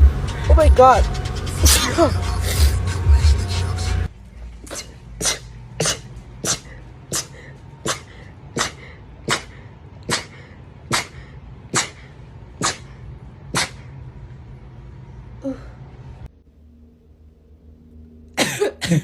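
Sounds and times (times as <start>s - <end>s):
short sharp sneezes: 4.7s - 13.9s.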